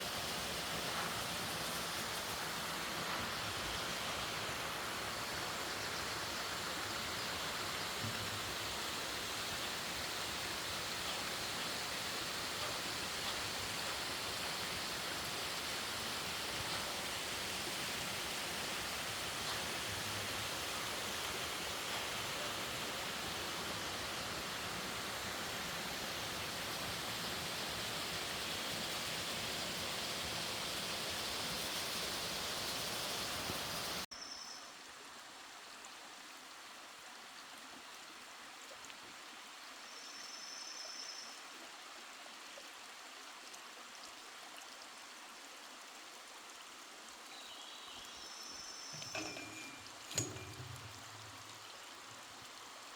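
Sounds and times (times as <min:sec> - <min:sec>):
stream rushing over rocks: 0:00.0 - 0:34.1.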